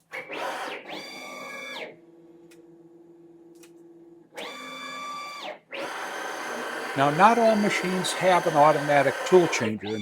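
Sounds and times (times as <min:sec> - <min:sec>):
router motors whining: 0:05.8 - 0:10.0.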